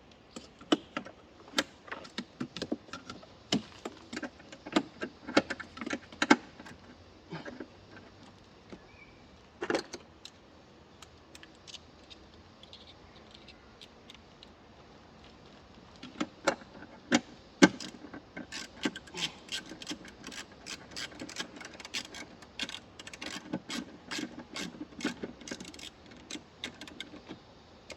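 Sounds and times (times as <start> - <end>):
metallic clicks of hand tools: 17.1 - 27.2.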